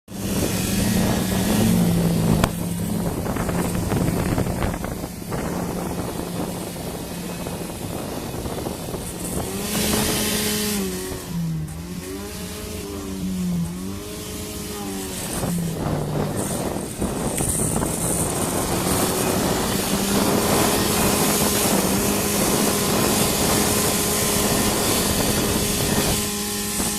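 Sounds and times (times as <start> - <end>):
engine revving: 0.1 - 26.9.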